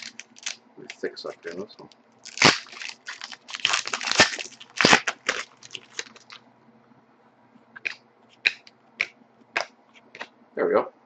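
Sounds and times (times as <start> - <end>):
wrapper crinkling: 0.0 - 1.6, 2.2 - 6.4.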